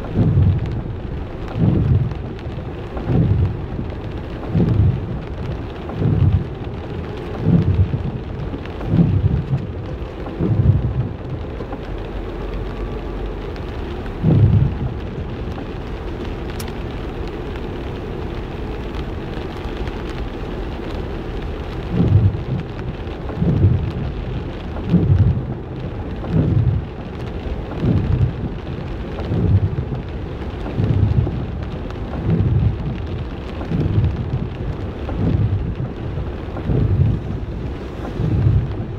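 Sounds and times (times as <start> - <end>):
low rumbling thumps: 0.0 - 18.2, 21.6 - 38.9
steady rain: 0.0 - 38.9.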